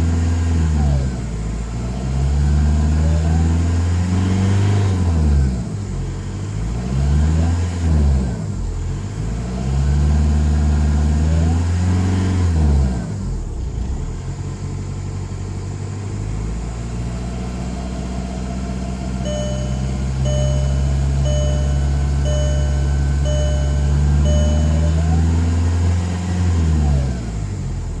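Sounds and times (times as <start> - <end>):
diesel engine revving: 0.0 - 28.0
short electronic beep: 19.2 - 25.7.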